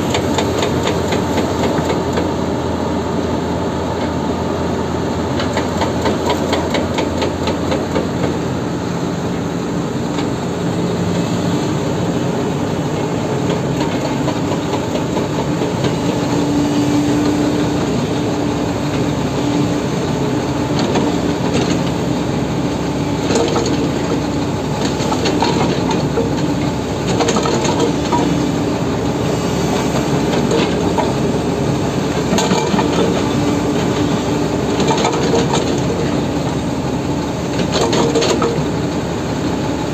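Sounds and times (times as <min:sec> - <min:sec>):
diesel engine droning: 0:00.0 - 0:39.9
hydraulic breaker hammering rock: 0:05.4 - 0:08.5.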